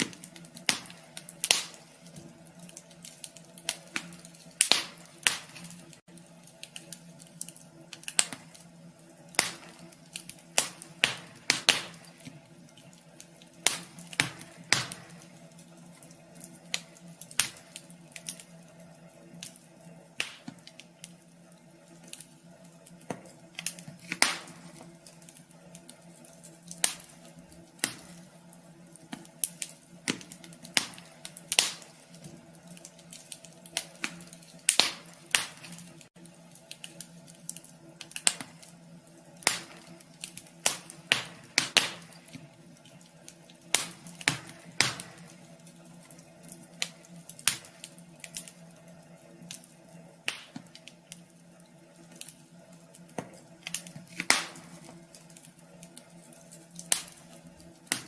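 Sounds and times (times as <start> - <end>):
faint steady hum: 0.0 - 58.0
wood fire crackling: 0.0 - 58.0.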